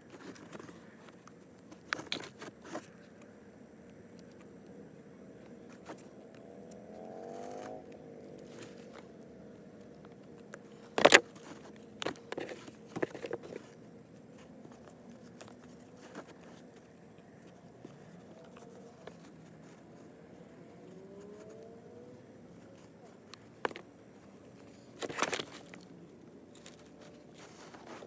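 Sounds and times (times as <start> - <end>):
engine revving in background: 5.9 - 9.9, 19.6 - 23.2.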